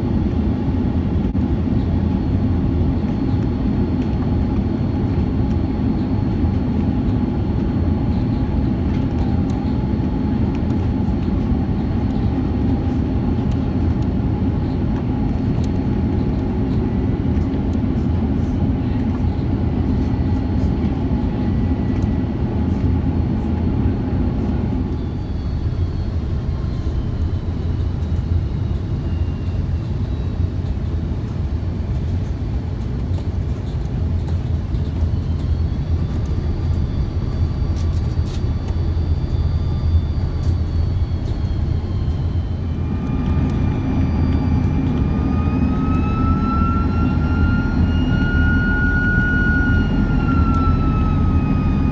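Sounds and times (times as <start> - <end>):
aircraft cabin drone: 0.0 - 51.9
engine whine falling in pitch: 23.3 - 32.0, 34.2 - 51.9.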